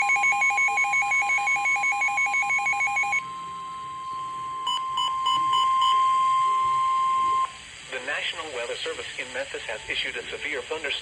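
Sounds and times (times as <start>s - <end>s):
rapid alternating electronic beeps: 0.0s - 6.4s
slow repeating beep: 0.0s - 7.6s
steady warning alarm tone: 0.0s - 7.6s.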